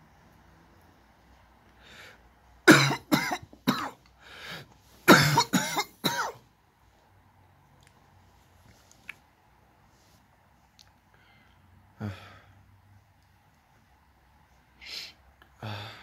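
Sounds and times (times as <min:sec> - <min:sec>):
person coughing: 0:02.7 - 0:04.0, 0:05.1 - 0:06.4.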